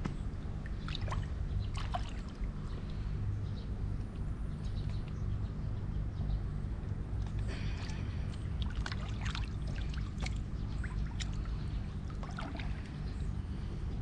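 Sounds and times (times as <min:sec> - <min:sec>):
water splashing and trickling: 0:00.0 - 0:03.3, 0:06.8 - 0:14.0
steady low rumble: 0:00.0 - 0:14.0.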